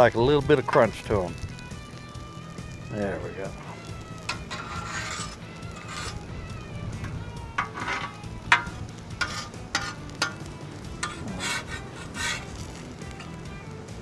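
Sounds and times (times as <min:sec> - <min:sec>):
food sizzling: 0:00.0 - 0:14.0
metal spatula scraping griddle: 0:00.4 - 0:01.5, 0:03.7 - 0:13.6.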